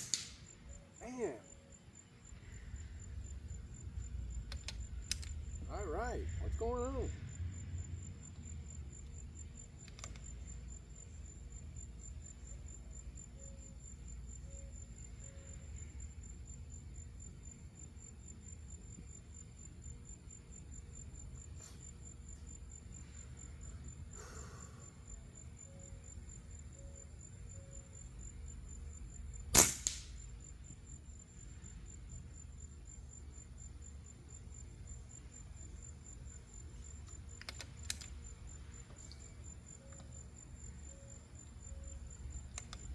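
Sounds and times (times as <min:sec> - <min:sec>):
rifle shot: 0:00.0 - 0:00.4, 0:29.5 - 0:30.2
insects trilling: 0:00.0 - 0:42.9.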